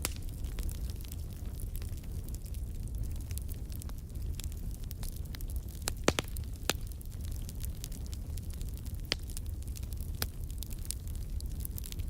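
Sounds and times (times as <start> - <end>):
fire popping: 0.0 - 12.0
low rumble of flame: 0.0 - 12.0
wood fire crackling: 0.0 - 12.0.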